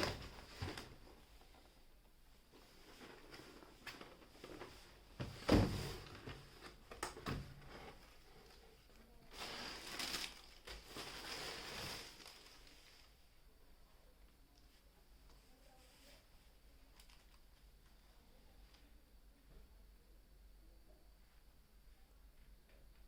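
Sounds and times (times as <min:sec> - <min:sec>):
packaging rustling: 0:09.3 - 0:13.1.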